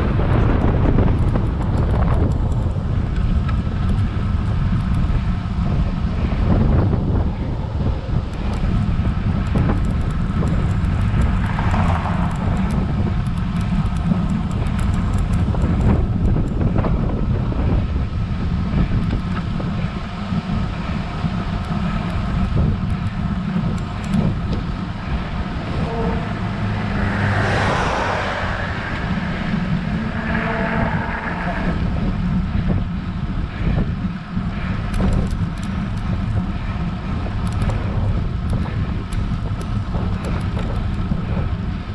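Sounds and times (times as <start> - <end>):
motor vehicle passing: 0.0 - 18.8, 19.9 - 33.7
wind rumbling on microphone: 0.0 - 41.9.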